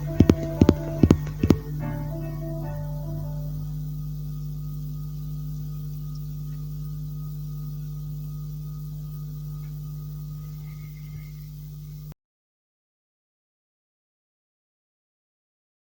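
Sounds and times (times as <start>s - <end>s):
low electronic drone: 0.0s - 12.1s
faint higher tones: 0.0s - 12.2s.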